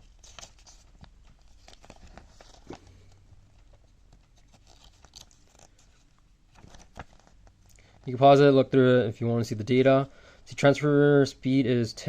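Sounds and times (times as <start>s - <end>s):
paper manual rustling: 0.0s - 8.4s.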